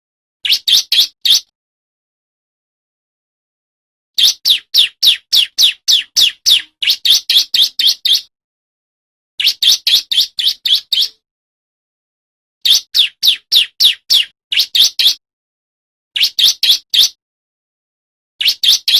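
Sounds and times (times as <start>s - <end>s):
bird singing sharp notes: 4.2s - 8.3s, 12.6s - 15.2s.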